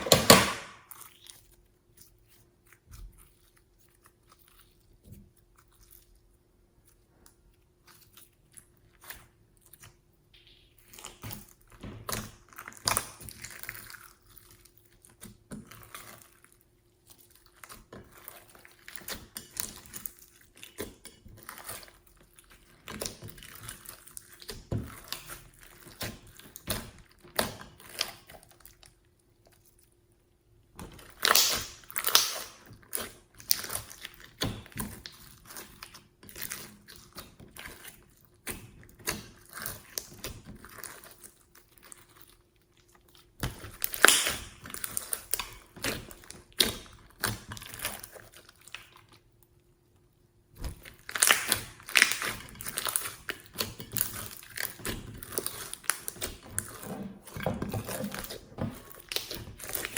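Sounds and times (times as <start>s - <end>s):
slime squished by hand: 30.8s - 42.4s, 43.0s - 49.4s, 50.5s - 59.9s.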